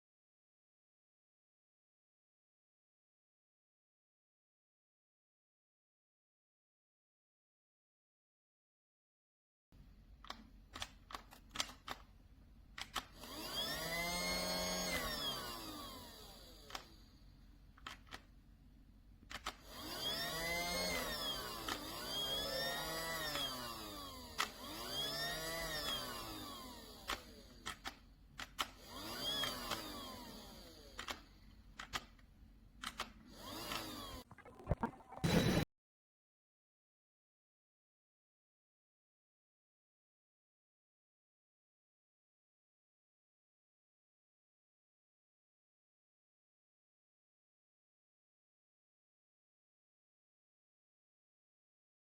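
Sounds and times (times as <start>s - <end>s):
toy vacuum motor whirring: 12.8s - 17.1s, 19.3s - 32.2s, 32.8s - 34.3s.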